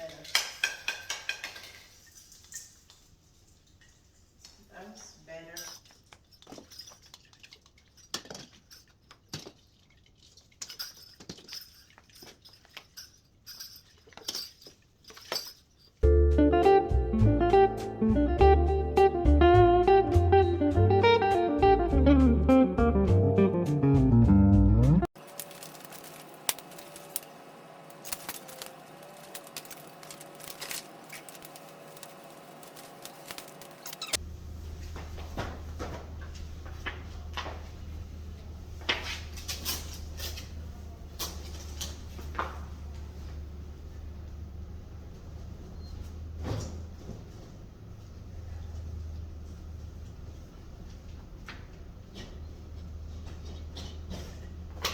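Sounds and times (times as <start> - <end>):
objects clicking and clinking: 0.0 - 4.2, 5.0 - 16.0, 25.2 - 34.2
small hard objects clicking: 25.2 - 34.2.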